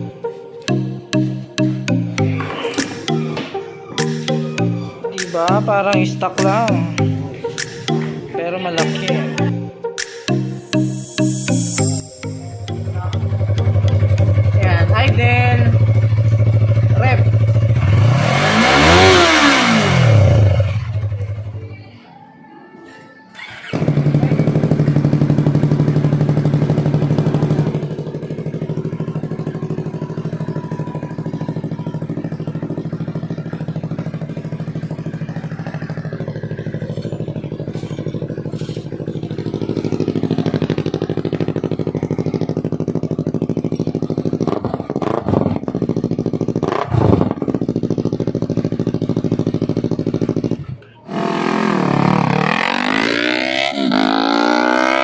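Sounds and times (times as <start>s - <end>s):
motorcycle engine revving: 12.2s - 21.7s, 23.4s - 55.0s.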